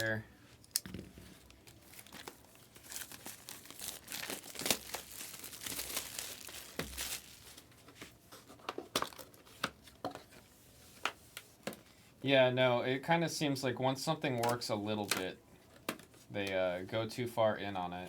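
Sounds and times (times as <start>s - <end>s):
sharp crinkles and clicks: 0.6s - 7.7s
plastic wrapping crinkling and tearing: 1.4s - 7.7s.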